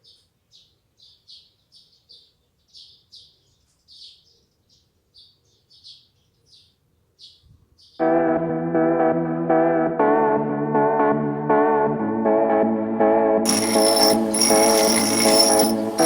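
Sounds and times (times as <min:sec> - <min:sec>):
faint bird chirping: 0:00.0 - 0:08.0.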